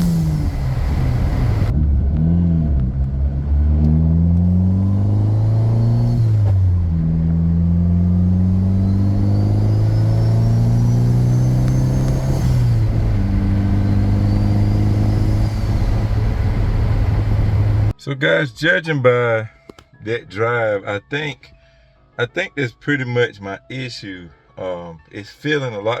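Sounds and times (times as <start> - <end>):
car engine accelerating hard: 0.0 - 17.9.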